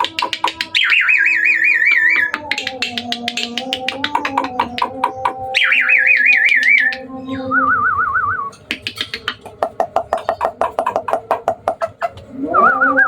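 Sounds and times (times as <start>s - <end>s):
bird clicking chatter: 0.0s - 7.0s, 8.6s - 12.2s
starling wavering whistle: 0.6s - 3.7s, 4.7s - 8.6s.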